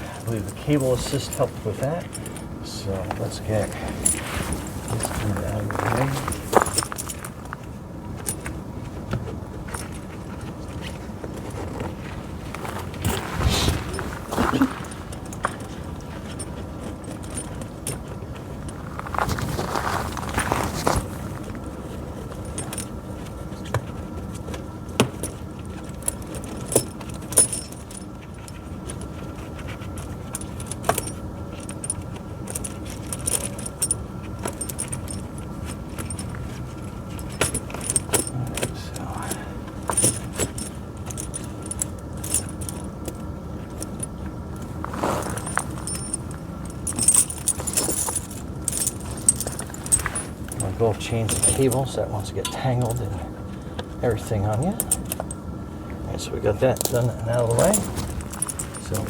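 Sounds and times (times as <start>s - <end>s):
steel chain links jangling: 0.0s - 7.6s, 25.2s - 53.2s, 54.6s - 55.4s, 56.8s - 59.0s.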